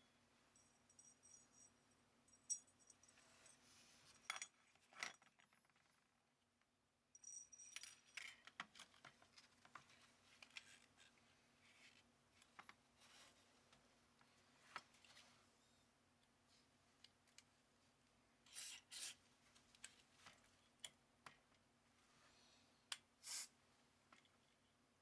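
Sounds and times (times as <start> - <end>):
small metal parts clinking: 7.2 - 9.0.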